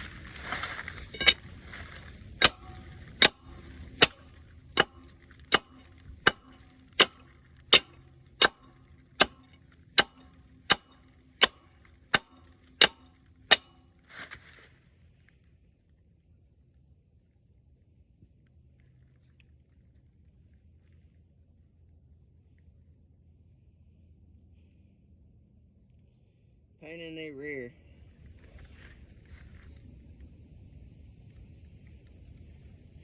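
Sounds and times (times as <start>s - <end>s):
hammer striking metal: 2.4s - 13.8s.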